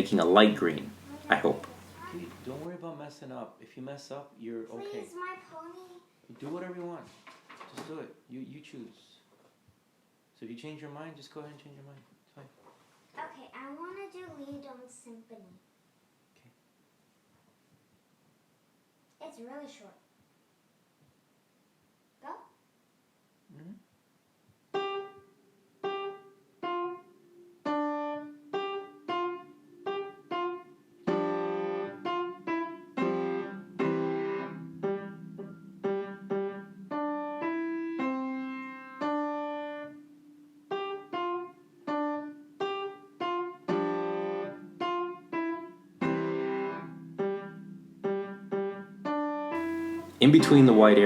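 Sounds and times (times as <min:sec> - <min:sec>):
piano piece: 0:00.0 - 0:02.7, 0:24.7 - 0:51.0.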